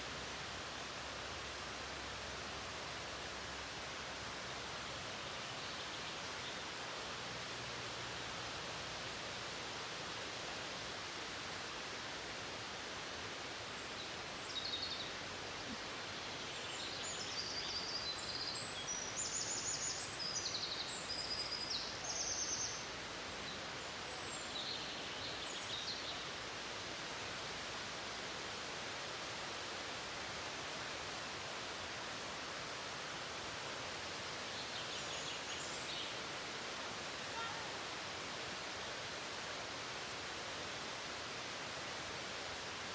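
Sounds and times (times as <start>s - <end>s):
waterfall rushing: 36.2s - 40.4s.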